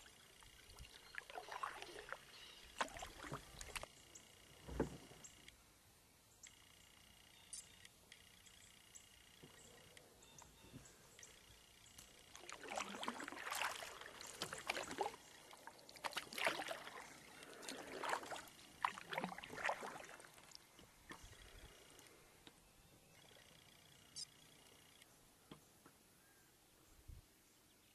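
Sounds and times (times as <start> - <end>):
paddle strokes splashing water: 0.0 - 5.2, 10.7 - 22.2.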